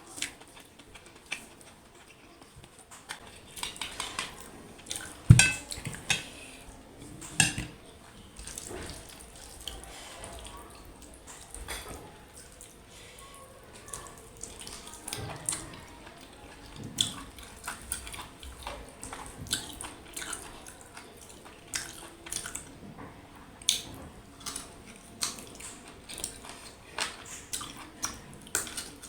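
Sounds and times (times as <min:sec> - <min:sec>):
plate and cutlery clinking: 0:05.3 - 0:06.4, 0:07.2 - 0:07.8.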